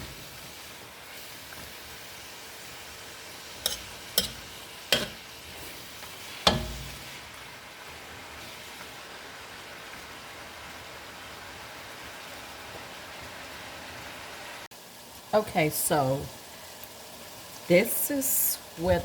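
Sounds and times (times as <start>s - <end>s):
food sizzling in a pot: 0.0s - 19.0s
utensil knocking against pot: 3.7s - 5.2s, 6.5s - 7.0s.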